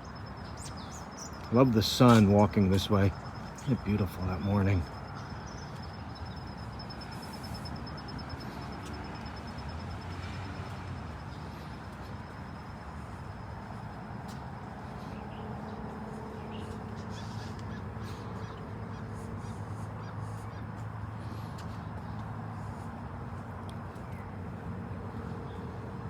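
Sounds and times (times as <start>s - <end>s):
birds calling: 0.0s - 9.2s, 14.9s - 22.9s
distant traffic hum: 0.0s - 26.0s.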